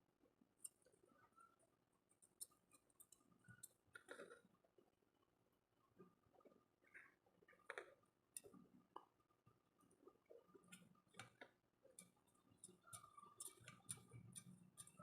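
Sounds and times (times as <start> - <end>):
faint metal tool clicks and taps: 2.2 - 4.2, 10.7 - 15.0.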